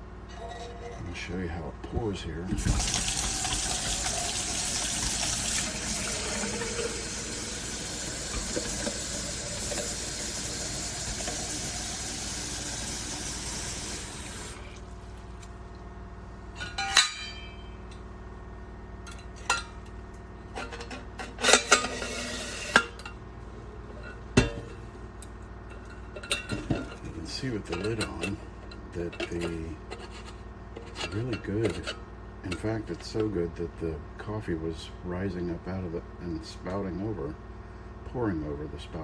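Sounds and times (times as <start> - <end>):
coffee pouring into a cup: 2.6 - 15.5
metal and crockery clinking: 16.6 - 17.8.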